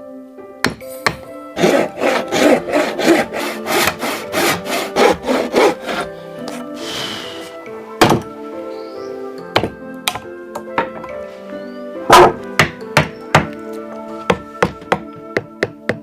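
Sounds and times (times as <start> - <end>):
soft background music: 0.0 - 16.0
rhythmic rasping strokes: 0.9 - 7.7.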